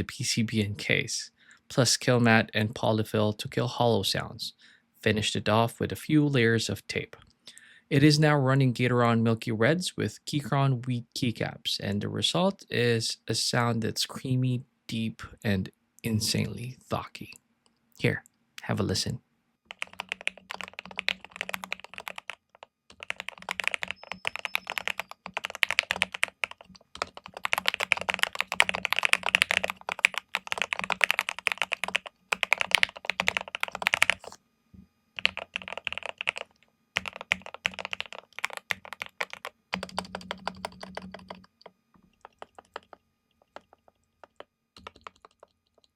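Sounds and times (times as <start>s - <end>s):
mechanical keyboard typing: 19.7s - 34.4s, 35.2s - 45.9s.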